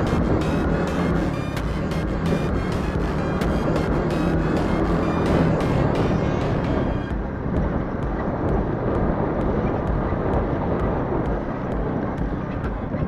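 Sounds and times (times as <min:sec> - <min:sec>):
moped engine running: 0:00.0 - 0:13.0
wind buffeting microphone: 0:06.6 - 0:13.0.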